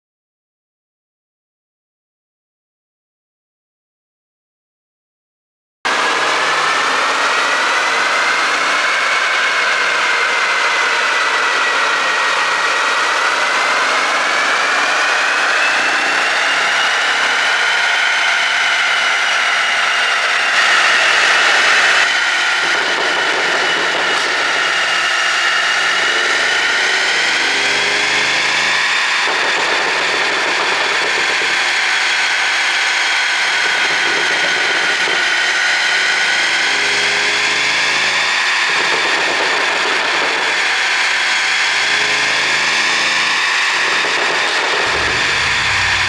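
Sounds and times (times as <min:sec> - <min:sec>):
high-pitched whine: 0:44.5 - 0:46.0
low hum: 0:44.8 - 0:46.0
car engine idling: 0:44.9 - 0:46.0.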